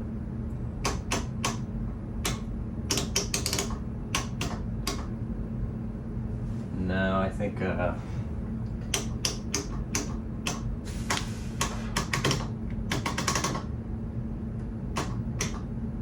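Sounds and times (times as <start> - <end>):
steady low hum: 0.0 - 16.0
sharp mechanical clicks: 0.8 - 5.1, 8.9 - 13.7, 15.0 - 15.7.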